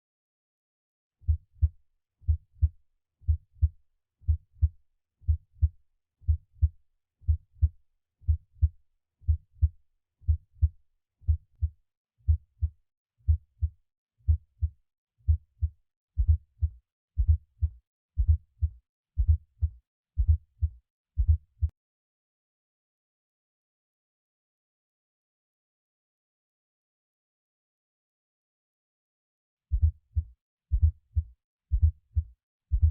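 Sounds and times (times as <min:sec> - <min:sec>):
heartbeat through a stethoscope: 0:01.2 - 0:21.7, 0:29.7 - 0:32.9.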